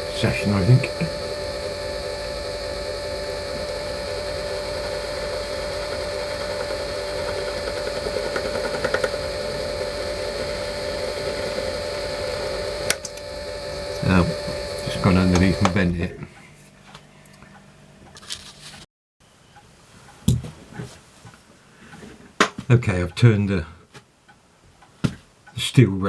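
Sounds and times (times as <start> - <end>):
cutting chatter on metal: 0.0 - 15.9
lathe motor hum: 0.0 - 16.1.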